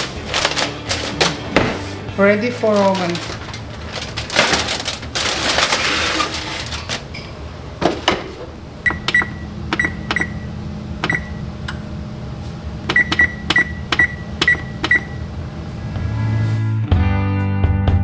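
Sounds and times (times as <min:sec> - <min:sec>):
oven humming: 0:00.0 - 0:16.8
short button beeps: 0:08.9 - 0:11.4, 0:12.9 - 0:15.2.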